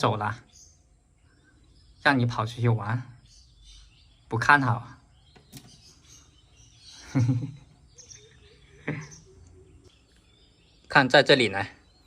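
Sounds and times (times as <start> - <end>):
faint bird chirping: 0.0 - 12.0.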